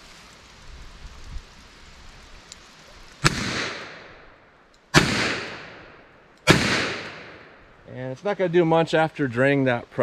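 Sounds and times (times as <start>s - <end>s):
revolver shots with echo: 3.2s - 4.3s, 5.0s - 7.6s.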